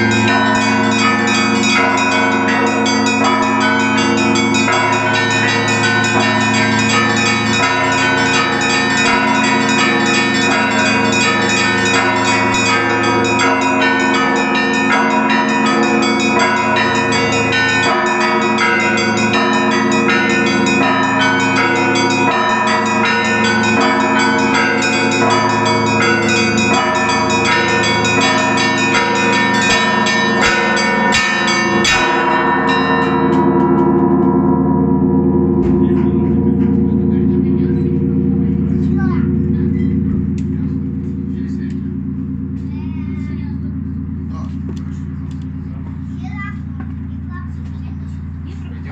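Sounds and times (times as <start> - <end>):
church bells ringing: 0.0 - 48.9
deep bells humming: 0.0 - 48.9.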